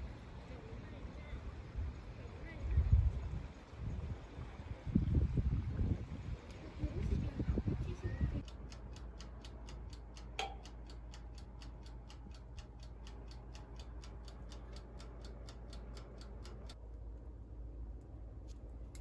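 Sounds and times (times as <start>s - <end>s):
low hum: 0.0s - 19.0s
mechanical ticking: 8.4s - 16.8s.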